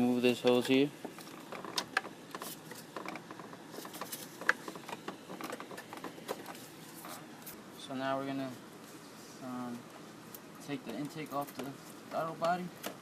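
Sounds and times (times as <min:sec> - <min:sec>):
plastic clicks and rustling: 0:00.5 - 0:06.6.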